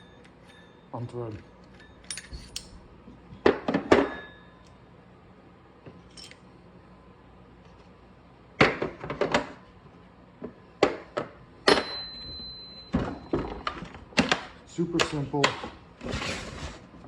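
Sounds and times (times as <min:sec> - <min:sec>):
thin metallic ring: 0:00.0 - 0:01.2, 0:11.7 - 0:13.3
metal parts clinking and knocking: 0:01.7 - 0:02.8, 0:06.1 - 0:06.4.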